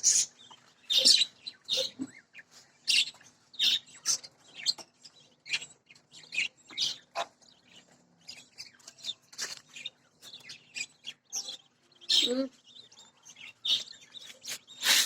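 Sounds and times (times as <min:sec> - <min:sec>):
budgerigars chirping: 0:00.0 - 0:09.2.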